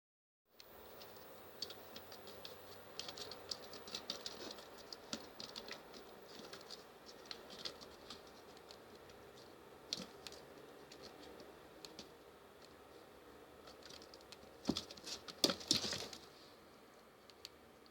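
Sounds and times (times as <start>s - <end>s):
cat claws scratching a post: 0.9s - 12.0s.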